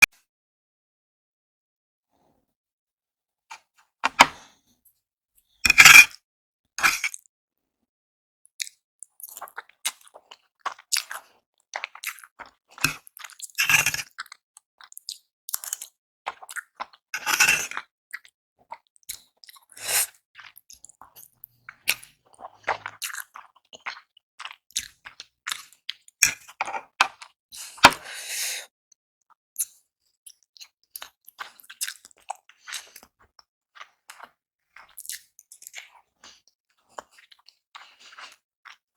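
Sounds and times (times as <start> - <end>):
wet chewing and lip smacks: 8.6 - 19.7, 20.4 - 27.4, 30.3 - 38.8.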